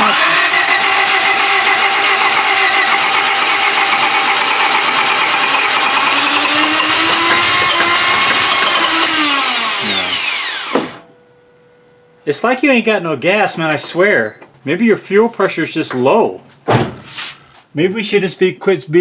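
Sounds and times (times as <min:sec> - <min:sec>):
car engine cranking: 0:00.0 - 0:10.8
high starter whine: 0:00.0 - 0:11.1.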